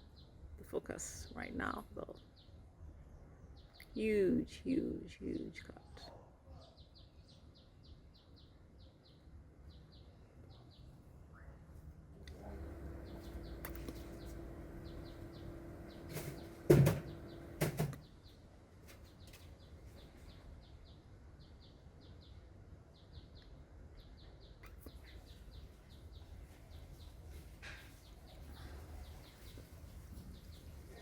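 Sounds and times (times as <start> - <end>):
steady pitched hum: 12.2 - 17.9
sharp knocks: 16.0 - 18.0.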